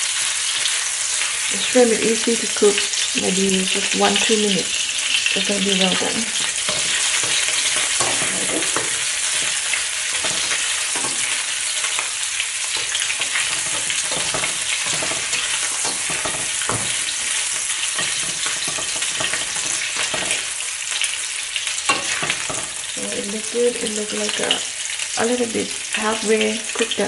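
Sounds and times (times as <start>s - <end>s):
shrimp sizzling in hot oil: 0.0s - 27.0s
spatula scraping a pan: 2.9s - 23.1s.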